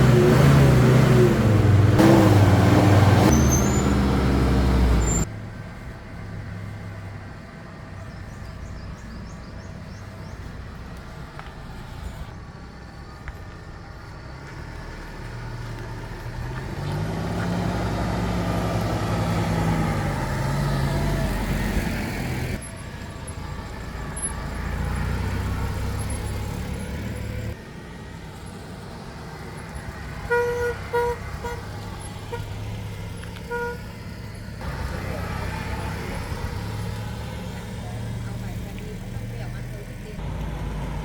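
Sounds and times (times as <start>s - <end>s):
car engine revving: 0.0s - 5.3s, 14.7s - 22.6s, 30.8s - 41.0s
car horn toots: 30.2s - 32.5s, 33.4s - 34.0s.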